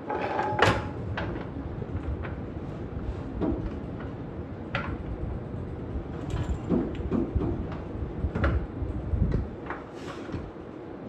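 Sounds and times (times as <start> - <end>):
metal clunks and scraping: 0.1 - 1.4.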